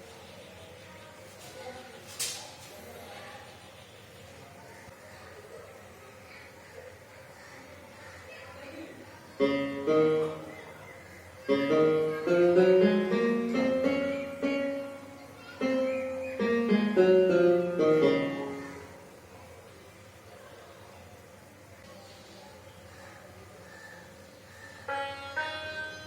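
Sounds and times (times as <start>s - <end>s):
keyboard playing piano voice: 9.3s - 19.2s, 24.8s - 26.0s.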